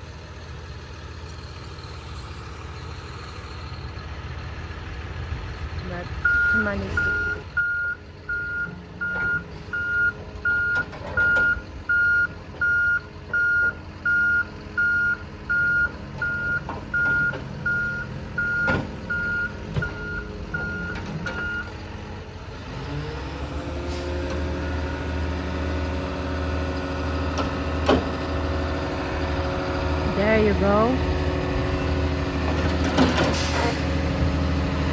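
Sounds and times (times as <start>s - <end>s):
truck engine running: 0.0s - 34.9s
reversing alarm beeping: 6.2s - 21.7s.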